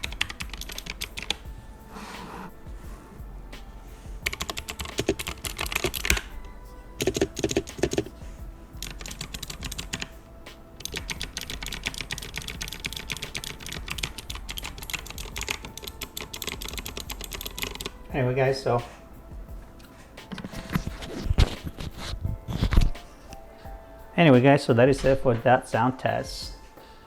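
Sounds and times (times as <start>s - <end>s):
mechanical keyboard typing: 0.0s - 1.4s, 4.2s - 6.3s, 7.0s - 8.1s, 8.8s - 10.1s, 10.8s - 18.0s.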